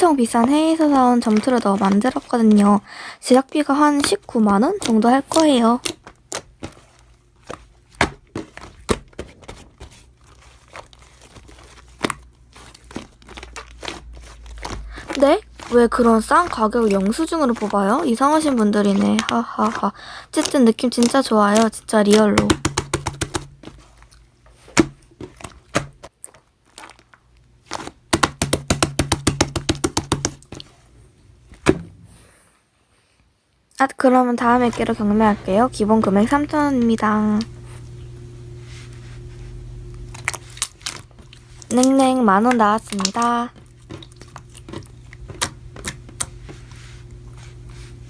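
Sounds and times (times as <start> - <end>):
slime squished by hand: 0.1 - 30.7, 39.9 - 47.2
slime clicking and popping: 41.6 - 46.3.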